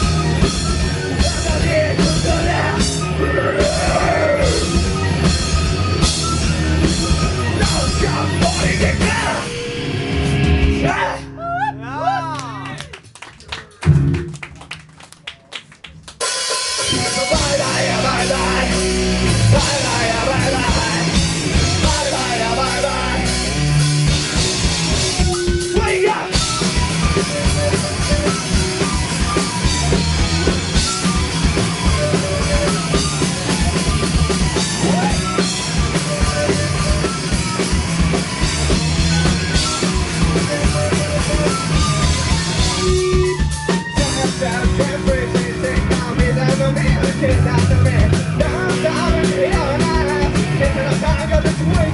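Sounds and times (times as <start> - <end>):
rock music with drums: 0.0 - 11.4, 13.8 - 14.4, 15.9 - 51.9.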